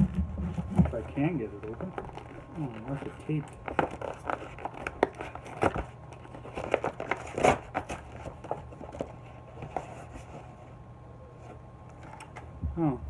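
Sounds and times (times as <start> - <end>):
packaging crinkling: 0.8 - 10.2
packing tape tearing: 1.6 - 9.1.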